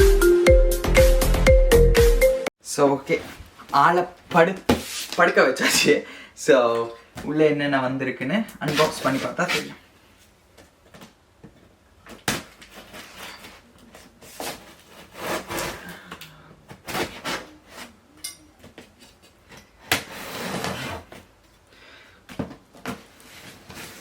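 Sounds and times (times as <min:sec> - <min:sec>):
cardboard rasping: 0:14.3 - 0:16.0, 0:16.7 - 0:18.0, 0:19.9 - 0:21.2.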